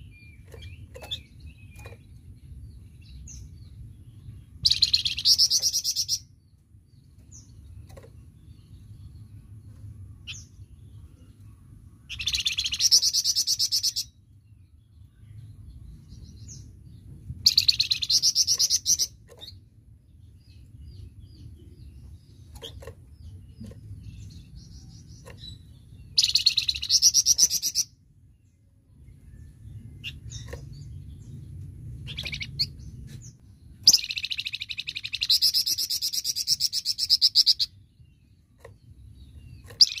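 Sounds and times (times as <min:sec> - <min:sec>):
steady low rumble: 0:00.0 - 0:27.1, 0:27.9 - 0:39.9
songbird trilling: 0:04.6 - 0:06.3, 0:12.1 - 0:14.1, 0:22.5 - 0:27.9, 0:32.0 - 0:32.8, 0:33.8 - 0:37.8, 0:39.3 - 0:40.0.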